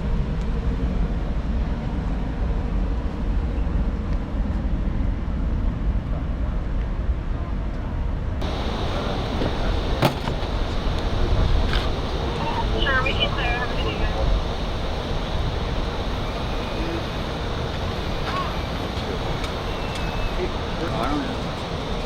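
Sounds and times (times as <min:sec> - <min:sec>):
steady low rumble: 0:00.0 - 0:22.0
hissy background noise: 0:08.4 - 0:22.0.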